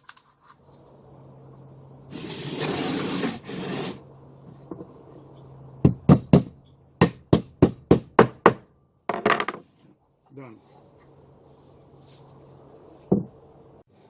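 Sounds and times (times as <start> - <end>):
hammer hitting a nail: 5.8 - 8.7.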